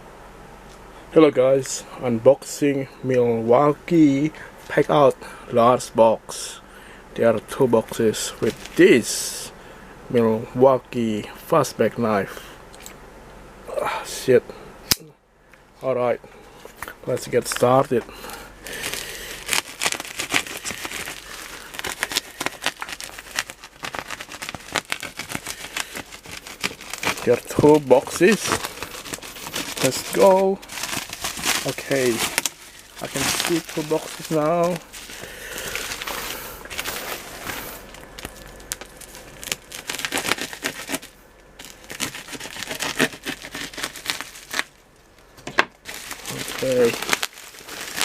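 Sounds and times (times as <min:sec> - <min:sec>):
packaging crinkling: 0:08.3 - 0:09.1, 0:16.7 - 0:48.0.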